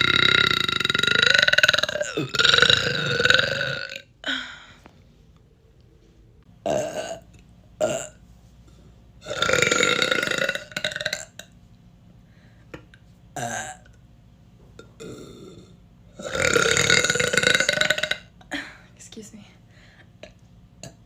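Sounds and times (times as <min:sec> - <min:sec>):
person burping loudly: 0:00.0 - 0:04.6, 0:06.6 - 0:08.2, 0:09.2 - 0:11.6, 0:13.4 - 0:14.0, 0:14.8 - 0:18.6, 0:20.2 - 0:21.0.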